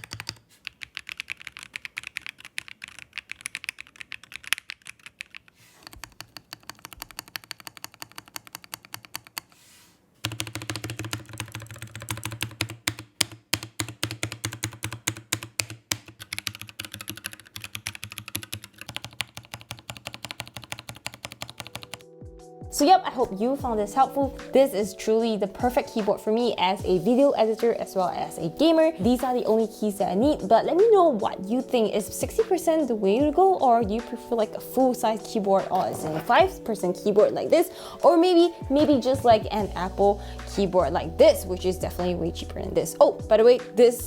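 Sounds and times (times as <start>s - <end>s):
typing on mechanical keyboard: 0.0s - 9.6s, 10.2s - 22.0s.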